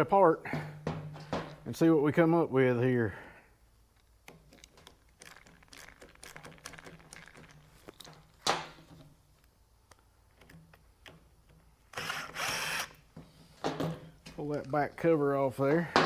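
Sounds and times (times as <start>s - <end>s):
tool parts clicking and rattling: 4.0s - 9.0s.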